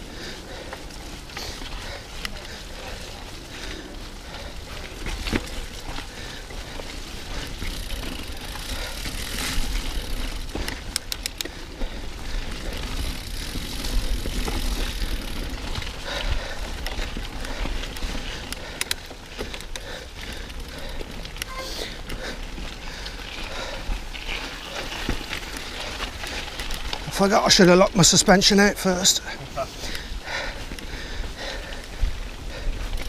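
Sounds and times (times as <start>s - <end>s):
bike drivetrain rattling: 0.0s - 33.0s
bike tyres rolling over dirt: 0.0s - 33.0s
sharp clicks: 10.6s - 11.5s.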